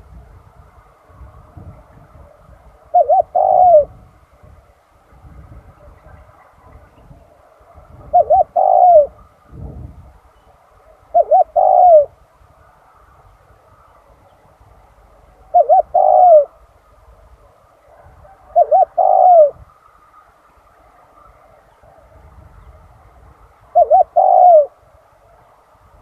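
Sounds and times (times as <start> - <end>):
dove cooing: 1.0 - 4.0, 5.8 - 9.3, 10.8 - 12.8, 15.2 - 19.7, 23.6 - 25.5.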